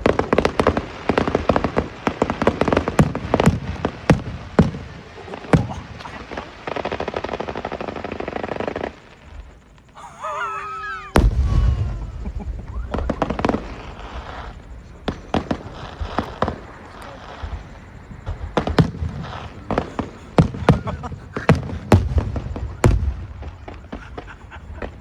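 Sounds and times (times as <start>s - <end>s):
fireworks bangs: 0.0s - 25.0s
fireworks crackling: 0.0s - 25.0s
deep firework boom: 11.1s - 25.0s.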